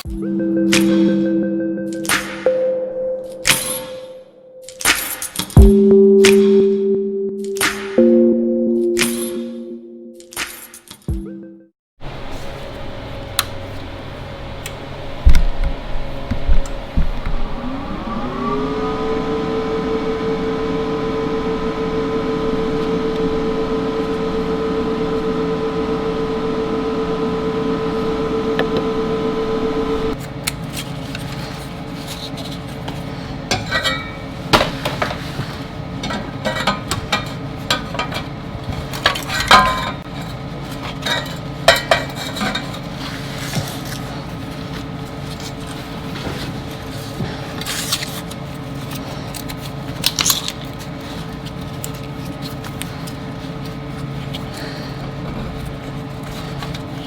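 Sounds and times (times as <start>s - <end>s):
electric power tool running: 17.9s - 30.2s.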